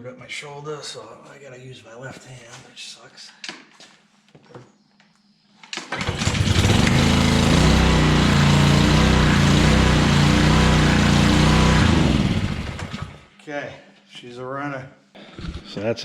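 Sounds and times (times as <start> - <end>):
small gas engine pull-started: 5.8 - 13.3.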